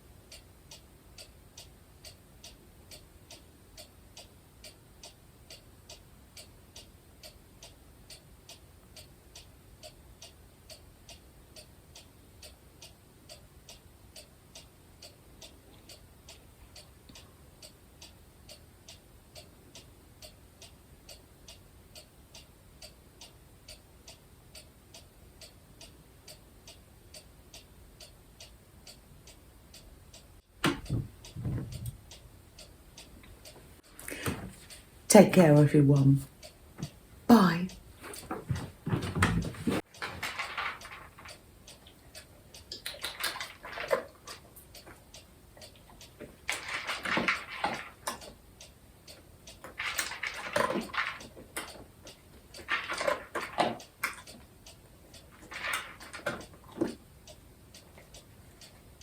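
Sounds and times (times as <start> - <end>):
faint steady ticking: 0.0 - 59.0.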